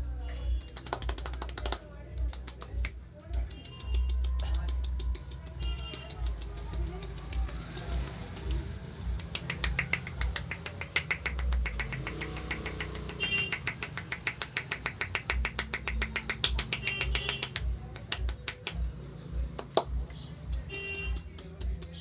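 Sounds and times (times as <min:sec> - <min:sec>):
rapid even clicks: 0:02.4 - 0:18.8.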